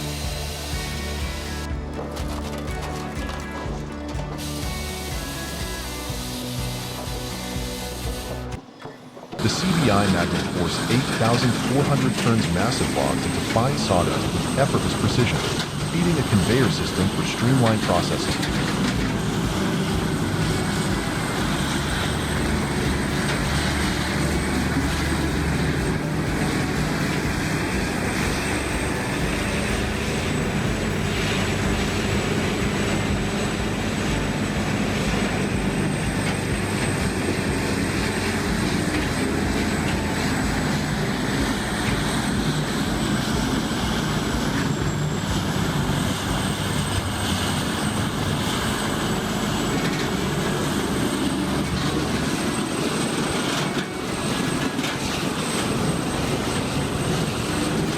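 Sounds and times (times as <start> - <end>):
grinder grinding logs: 0.0 - 57.9.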